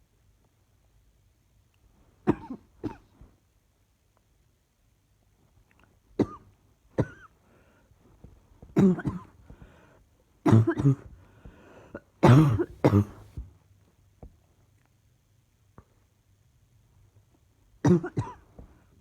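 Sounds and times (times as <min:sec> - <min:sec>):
woman coughing: 0:02.3 - 0:03.1, 0:07.0 - 0:07.3, 0:08.8 - 0:09.4, 0:10.5 - 0:11.2, 0:12.2 - 0:13.4, 0:17.8 - 0:18.5.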